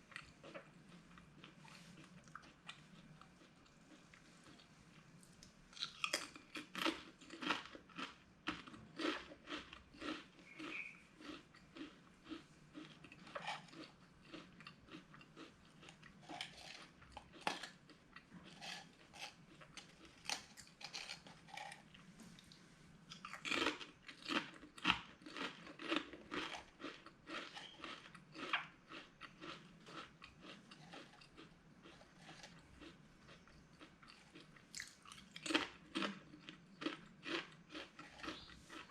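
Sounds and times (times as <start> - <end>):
potato chips crunching: 5.4 - 22.0, 23.1 - 38.9.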